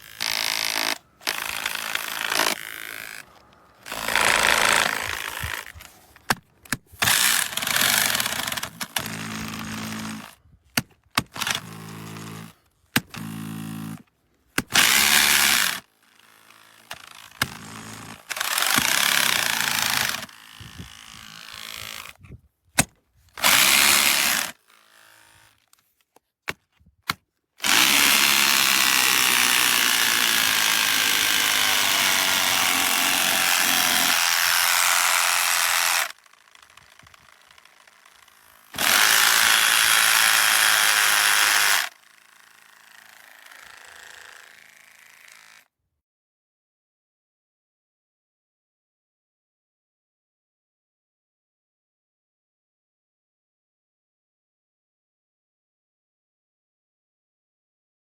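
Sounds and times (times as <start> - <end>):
rotary hammer running in bursts: 0.0 - 5.9, 27.6 - 45.6.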